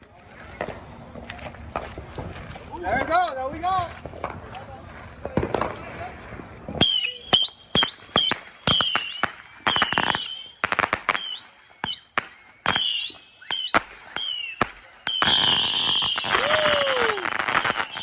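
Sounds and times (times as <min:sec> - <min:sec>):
fireworks crackling: 0:00.0 - 0:18.0
fireworks bangs: 0:00.4 - 0:18.0
fireworks whistling: 0:05.3 - 0:18.0.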